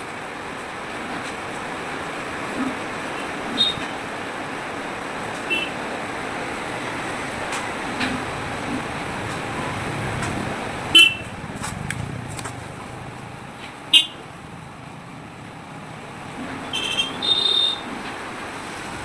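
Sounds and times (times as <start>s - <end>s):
street traffic noise: 0.0s - 19.0s
vehicle horns tooting: 10.9s - 11.4s, 13.9s - 14.2s, 16.6s - 17.9s.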